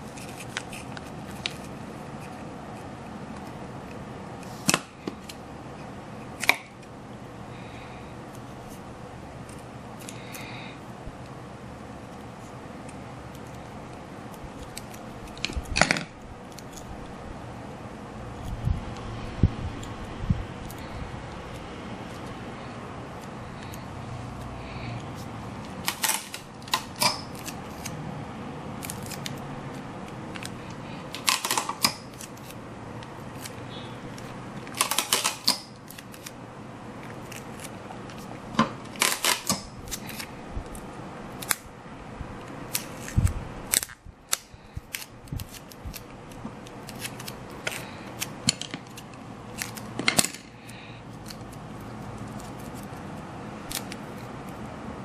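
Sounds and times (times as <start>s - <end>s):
scissors snipping: 28.8s - 32.6s, 42.4s - 50.3s, 53.7s - 54.6s.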